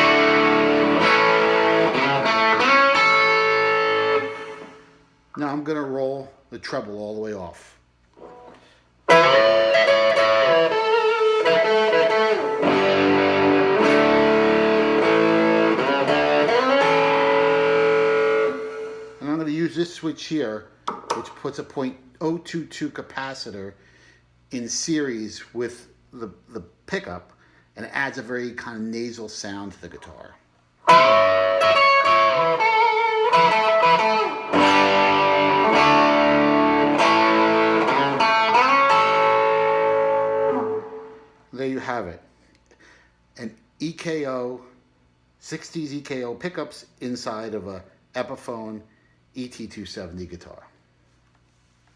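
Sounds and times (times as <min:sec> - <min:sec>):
overdriven electric guitar: 0:00.0 - 0:05.0, 0:08.2 - 0:19.2, 0:30.9 - 0:41.4.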